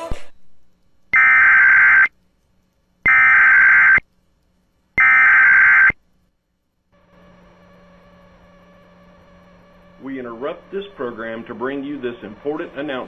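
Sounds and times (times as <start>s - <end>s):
buzzy digital data bursts: 1.1s - 2.2s, 3.0s - 4.1s, 5.0s - 6.0s.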